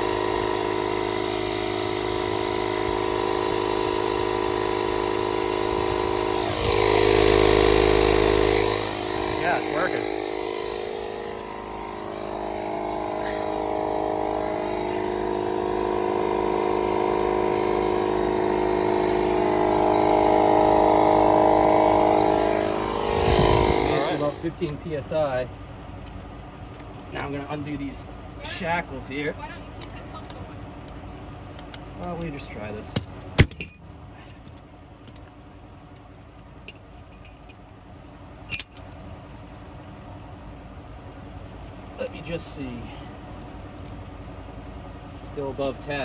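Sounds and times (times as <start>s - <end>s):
air pump humming: 0.0s - 24.8s
metal clank: 33.4s - 33.9s, 38.5s - 38.9s
light metal clinks: 36.7s - 37.6s.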